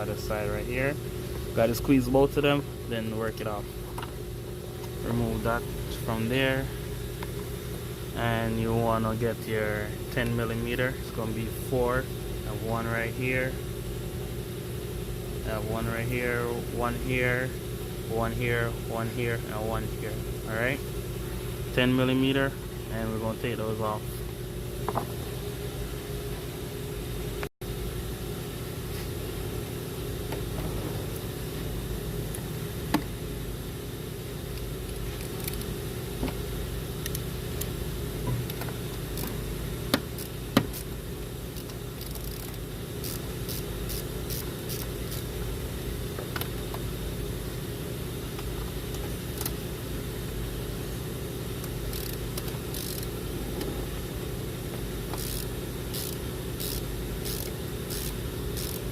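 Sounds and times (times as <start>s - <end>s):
steady low hum: 0.0s - 58.9s
ratchet clicks and taps: 38.5s - 40.9s, 41.6s - 45.3s, 51.9s - 53.1s, 55.1s - 58.9s.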